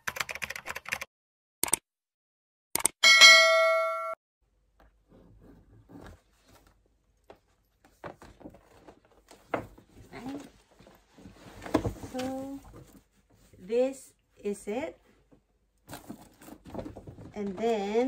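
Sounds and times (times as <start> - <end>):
bell-like ding: 3.0 - 4.2.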